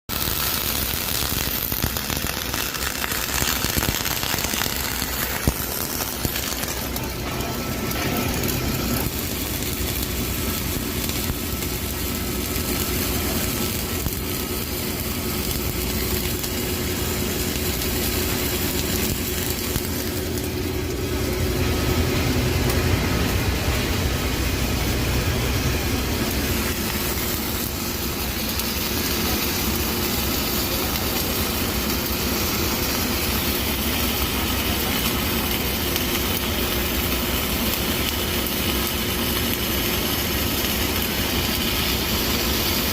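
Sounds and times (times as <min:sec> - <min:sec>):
arc welding crackling hiss: 0:00.1 - 0:42.9
low machine hum: 0:00.2 - 0:42.9.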